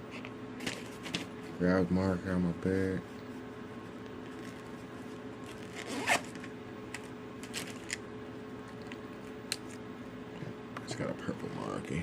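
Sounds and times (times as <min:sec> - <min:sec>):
zipper opening: 0:05.4 - 0:06.5.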